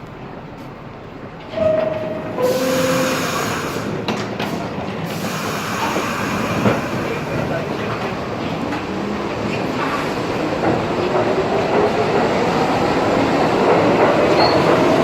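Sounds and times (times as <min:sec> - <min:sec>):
subway train pulling out: 0:00.0 - 0:15.0
two-tone descending door chime: 0:01.6 - 0:03.1.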